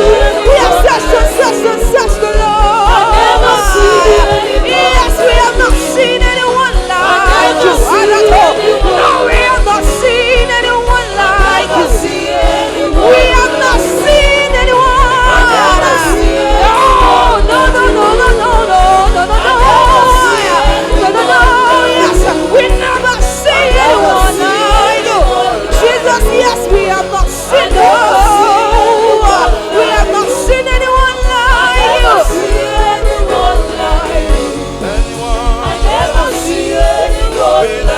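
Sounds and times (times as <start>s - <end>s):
band with steady low beat: 0.0s - 37.9s
gospel voices singing: 0.0s - 37.9s.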